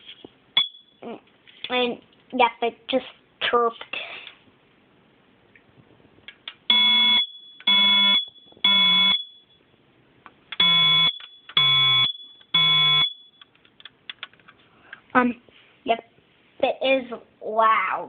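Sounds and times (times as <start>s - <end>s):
smoke detector beeping: 0.6s - 1.0s, 6.7s - 9.7s, 10.6s - 13.4s.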